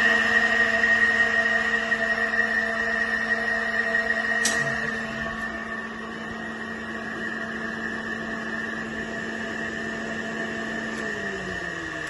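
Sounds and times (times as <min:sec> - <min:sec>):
electric motor hum and whine: 0:00.0 - 0:12.0
sharp click: 0:04.4 - 0:04.8.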